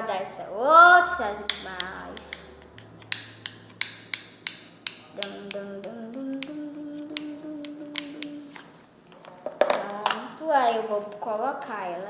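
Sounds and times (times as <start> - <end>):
person humming low note: 0.9 - 8.5
slime clicking and popping: 1.1 - 5.6.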